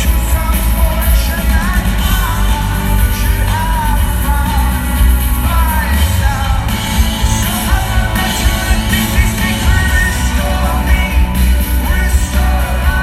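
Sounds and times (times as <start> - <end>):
live rock band playing: 0.0 - 13.0
person singing: 0.0 - 13.0.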